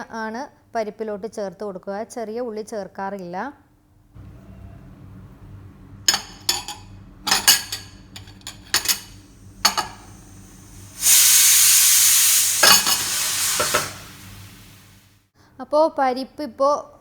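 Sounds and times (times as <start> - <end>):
loud steady hiss: 9.0 - 15.2.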